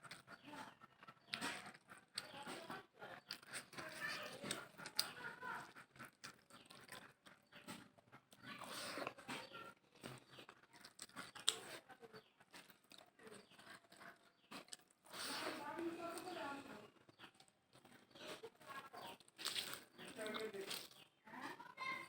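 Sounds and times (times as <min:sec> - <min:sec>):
lip smacks and mouth clicks: 0:03.2 - 0:08.4, 0:19.2 - 0:21.0
person chewing: 0:03.2 - 0:11.8, 0:12.4 - 0:16.3, 0:16.9 - 0:21.0.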